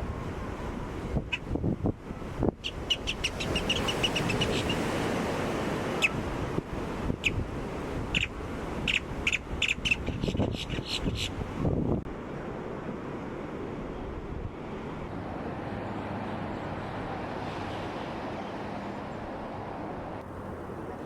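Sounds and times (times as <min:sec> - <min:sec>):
surf: 0:00.0 - 0:21.0
wind: 0:00.0 - 0:21.0
grackles calling harshly: 0:02.6 - 0:04.9, 0:08.1 - 0:11.4.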